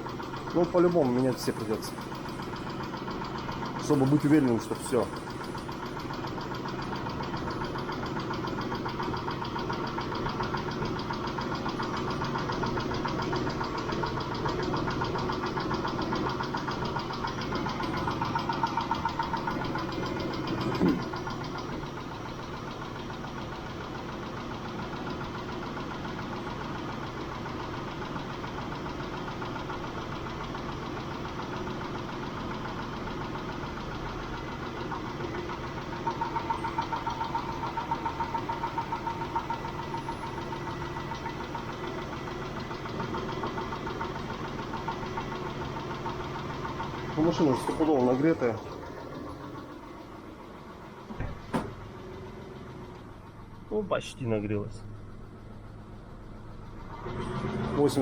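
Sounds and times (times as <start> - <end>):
engine idling: 0.0 - 58.0
fast even lifter ticking: 0.1 - 22.5, 34.2 - 50.4.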